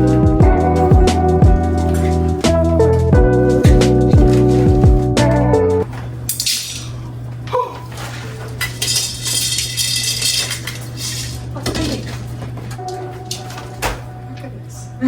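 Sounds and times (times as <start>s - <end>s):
steady low hum: 0.0s - 15.0s
dishes and cutlery clinking: 6.3s - 7.0s, 7.8s - 14.1s.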